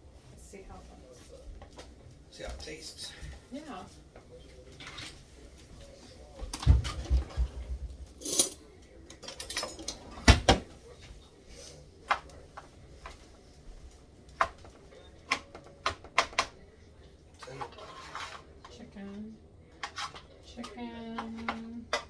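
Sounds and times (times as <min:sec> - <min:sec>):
utensils clinking against dishes: 0:08.1 - 0:10.7, 0:17.4 - 0:22.0.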